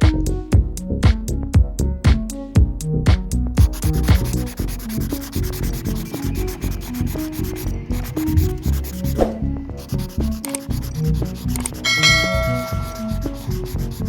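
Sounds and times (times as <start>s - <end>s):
electronic music: 0.0s - 14.0s
scratchy rubbing noise: 3.6s - 14.0s.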